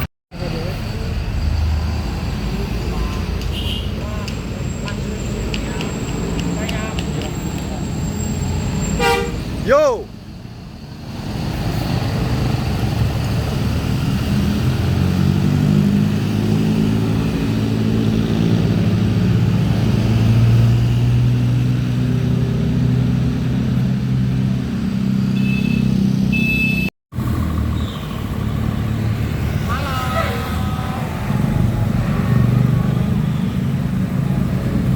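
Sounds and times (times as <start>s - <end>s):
bus engine running: 0.4s - 25.2s.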